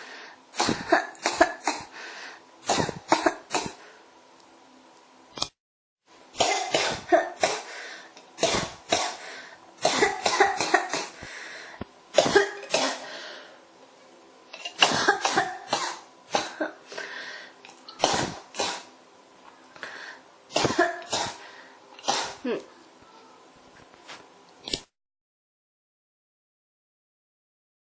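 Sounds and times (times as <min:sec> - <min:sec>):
person coughing: 0:00.6 - 0:01.9, 0:02.6 - 0:03.8, 0:06.4 - 0:07.7, 0:08.4 - 0:09.2, 0:09.8 - 0:11.2, 0:12.2 - 0:13.1, 0:14.6 - 0:16.8, 0:18.0 - 0:18.9, 0:20.5 - 0:21.4, 0:22.0 - 0:22.6.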